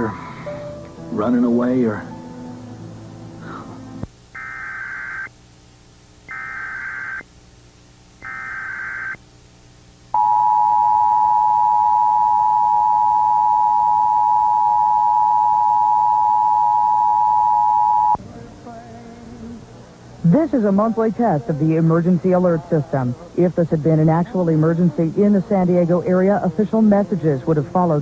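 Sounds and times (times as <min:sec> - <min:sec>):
digital data tone bursts: 0:06.3 - 0:07.2, 0:08.2 - 0:09.2
two-tone attention signal: 0:10.2 - 0:18.2.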